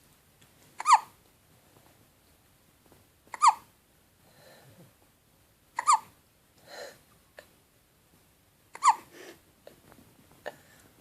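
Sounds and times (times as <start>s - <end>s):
baby hiccuping: 0.8s - 1.2s, 3.3s - 3.7s, 5.8s - 6.2s, 8.7s - 9.1s
baby breathing softly: 6.6s - 7.1s, 8.8s - 9.8s.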